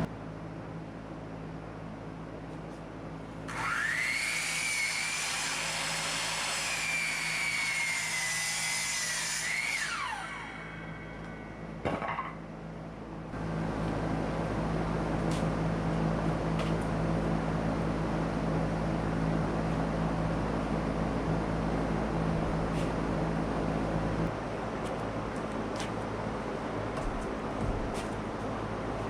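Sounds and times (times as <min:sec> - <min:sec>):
low motor hum: 0:00.0 - 0:29.0
circular saw cutting wood: 0:03.5 - 0:11.8.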